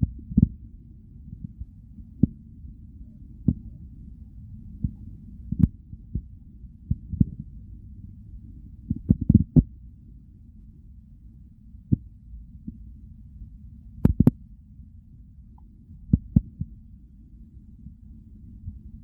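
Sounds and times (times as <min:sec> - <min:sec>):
stomach rumbling and gurgling: 0:00.0 - 0:00.7, 0:04.7 - 0:07.9, 0:08.6 - 0:09.8.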